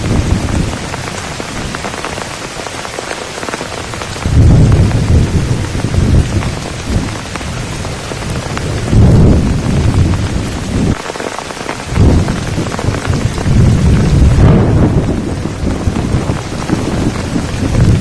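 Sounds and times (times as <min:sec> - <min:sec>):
heavy rain falling: 0:00.0 - 0:18.0
low rumbles of thunder: 0:04.2 - 0:11.0, 0:11.9 - 0:18.0.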